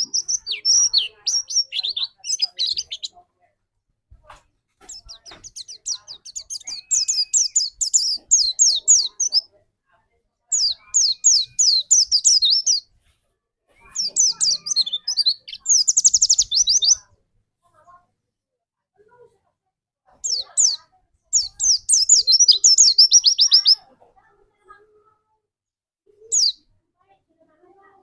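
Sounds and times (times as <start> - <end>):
bird chattering song: 0.0 - 3.2, 4.8 - 9.6, 10.5 - 12.9, 13.8 - 17.1, 20.2 - 23.9, 26.2 - 26.6.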